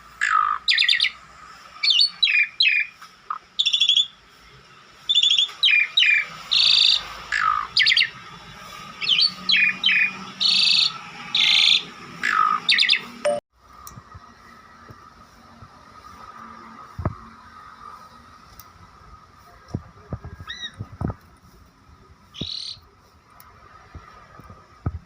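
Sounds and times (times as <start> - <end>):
starling calling: 0.0 - 4.2, 5.1 - 13.3, 22.4 - 22.9.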